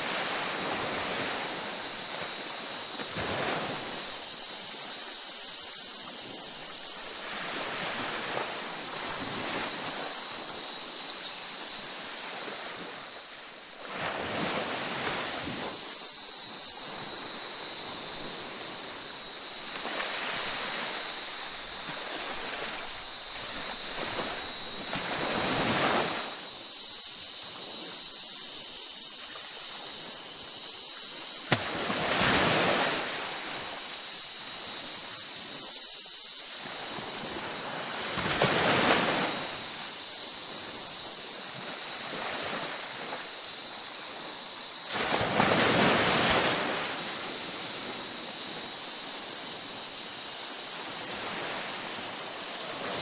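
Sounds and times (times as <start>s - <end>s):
ocean waves breaking: 0.0s - 26.6s, 31.1s - 35.8s, 36.5s - 43.4s, 44.1s - 48.0s.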